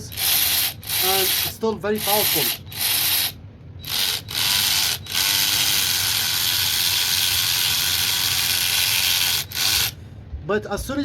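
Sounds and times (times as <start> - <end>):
electric ratchet wrench running: 0.0 - 10.0.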